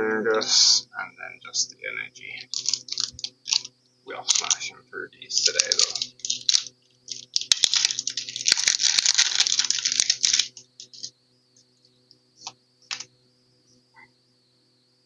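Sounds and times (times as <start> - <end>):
faint high whine: 0.0 - 15.0
foil wrapper crinkling: 2.5 - 4.6, 5.3 - 11.1.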